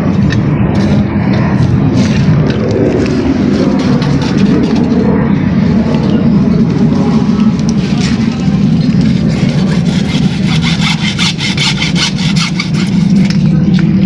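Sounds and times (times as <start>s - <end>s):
steady low hum: 0.0s - 14.0s
hacksaw cutting plastic pipe: 3.5s - 5.0s, 9.0s - 13.6s.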